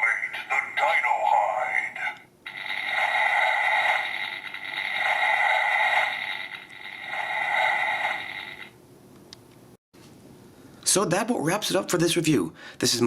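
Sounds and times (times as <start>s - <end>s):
toy electronic sound effects: 2.5s - 8.7s.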